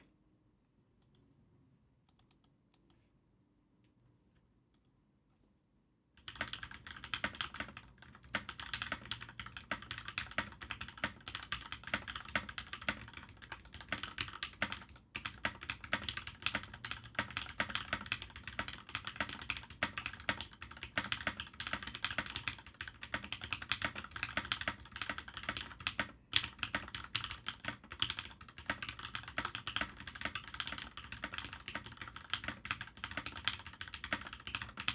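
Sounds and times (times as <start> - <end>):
fast typing on mechanical keyboard: 6.2 - 34.9.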